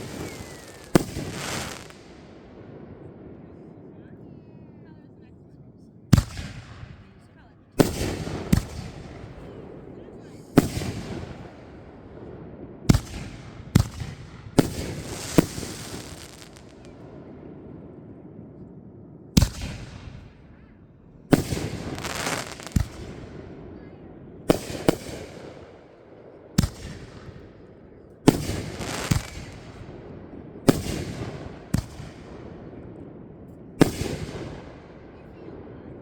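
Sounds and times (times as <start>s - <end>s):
fireworks crackling: 0.0s - 2.6s, 12.8s - 17.6s, 21.3s - 23.7s, 28.2s - 35.3s
fireworks booming: 0.0s - 3.5s, 7.8s - 18.4s, 19.3s - 36.0s.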